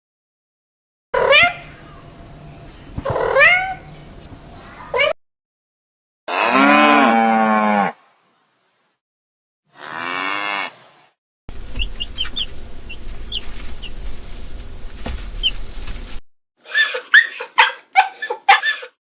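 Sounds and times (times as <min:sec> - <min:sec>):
cow mooing: 0:06.3 - 0:08.0, 0:09.8 - 0:10.7
small birds chirping: 0:11.6 - 0:14.2.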